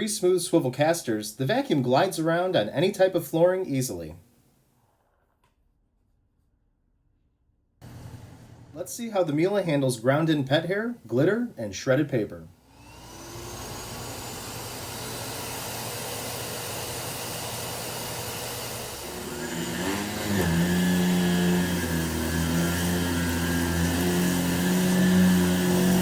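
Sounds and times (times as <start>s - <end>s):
canister vacuum cleaning carpet: 7.8s - 11.2s, 12.7s - 26.0s.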